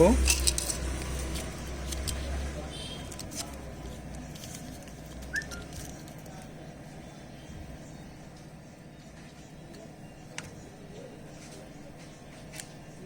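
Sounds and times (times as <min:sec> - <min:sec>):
faint high chirp: 0:05.3 - 0:05.7.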